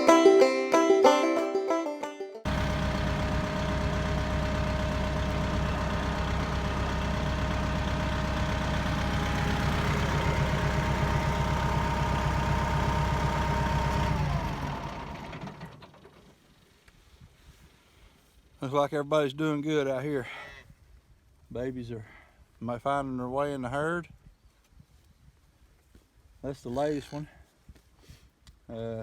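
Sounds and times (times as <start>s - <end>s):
tractor engine running: 2.5s - 16.5s.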